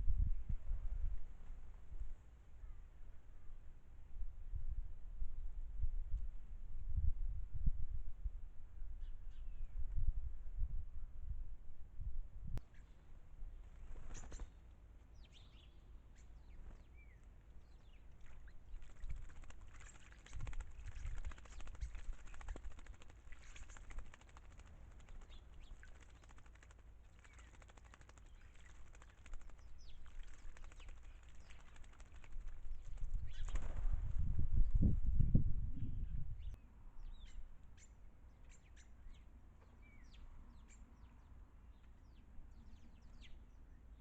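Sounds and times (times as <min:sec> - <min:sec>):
birds splashing in water: 0:17.7 - 0:34.0.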